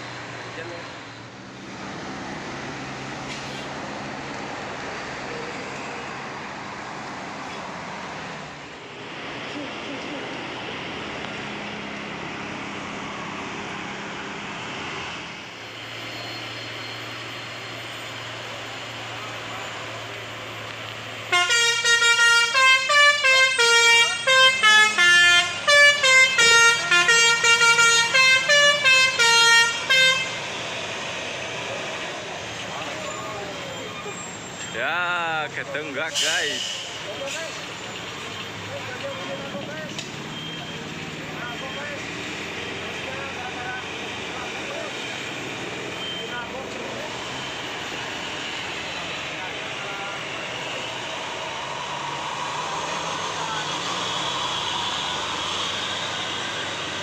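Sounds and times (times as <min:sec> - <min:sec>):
bus engine running: 0:00.0 - 0:57.0
road and tyre noise: 0:00.0 - 0:57.0
musical bus horn playing a tune: 0:21.2 - 0:30.5.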